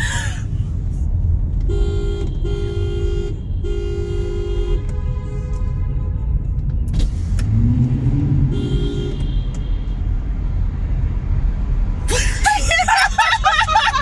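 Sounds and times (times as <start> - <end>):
road and engine rumble: 0.0 - 14.0
car horn: 1.6 - 6.5, 8.4 - 10.0.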